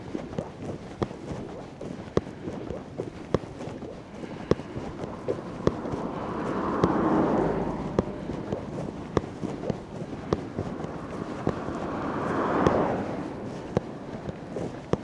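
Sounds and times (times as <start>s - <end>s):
footsteps walking: 3.2s - 15.0s.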